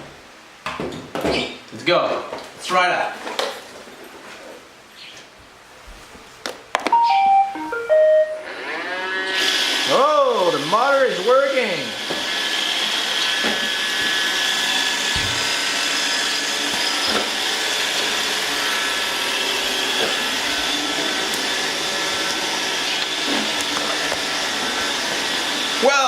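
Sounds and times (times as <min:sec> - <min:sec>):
robot vacuum whirring: 0:11.1 - 0:26.0.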